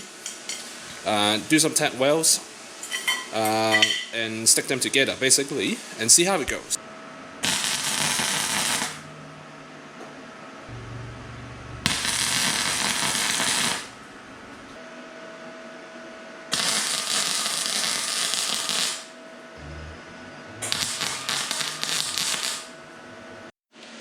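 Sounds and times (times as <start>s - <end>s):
welding arc crackle: 7.4s - 9.1s, 11.8s - 14.8s, 16.5s - 19.1s, 20.5s - 22.8s.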